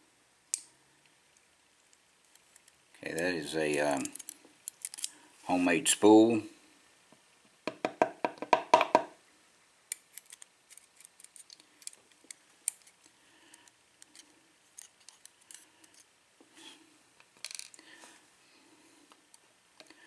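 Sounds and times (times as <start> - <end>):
small metal tools clicking: 3.9 - 5.1.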